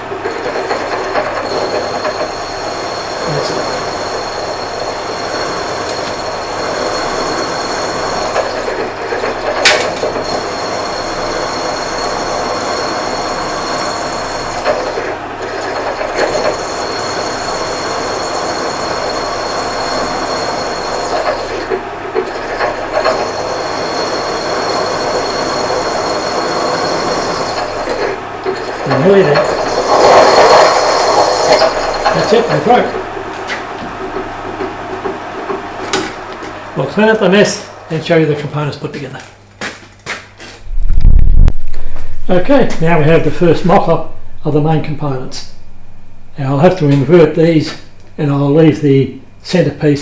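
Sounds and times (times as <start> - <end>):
sharp drill screech: 1.4 - 8.9, 9.6 - 15.2, 16.0 - 21.7, 22.3 - 33.0
drill cutting into steel: 1.4 - 33.0.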